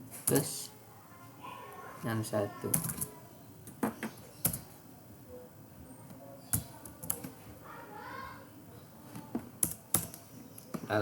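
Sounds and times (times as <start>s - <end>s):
computer keyboard keystrokes: 6.5s - 7.3s, 9.6s - 10.2s.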